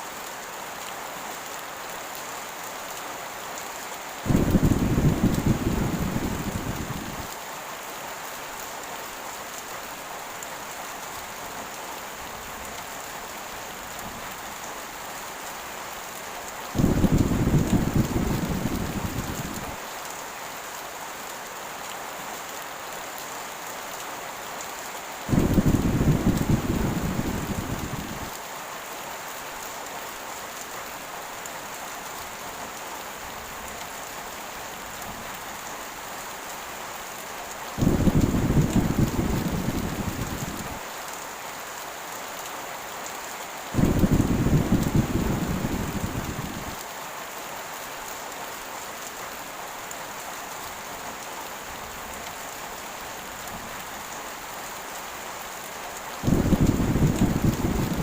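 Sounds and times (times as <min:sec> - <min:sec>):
heavy rain falling: 0:00.0 - 0:58.0
thunder rumbling: 0:04.3 - 0:07.3, 0:16.8 - 0:19.8, 0:25.3 - 0:28.3, 0:37.8 - 0:40.8, 0:43.8 - 0:46.8, 0:56.2 - 0:58.0.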